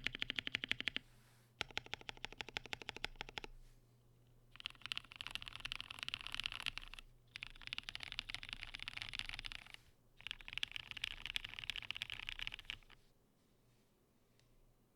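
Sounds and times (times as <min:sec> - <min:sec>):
mechanical keyboard typing: 0:00.0 - 0:01.0, 0:01.6 - 0:03.5, 0:04.6 - 0:13.0.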